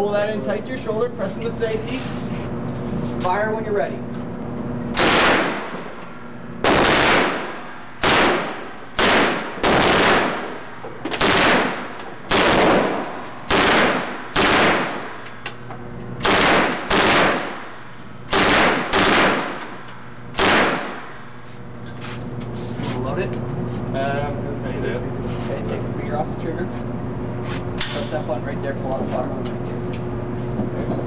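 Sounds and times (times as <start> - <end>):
submachine gun firing bursts: 5.0 - 5.8, 6.6 - 10.6, 11.2 - 15.2, 16.2 - 17.7, 18.3 - 19.6, 20.3 - 21.1.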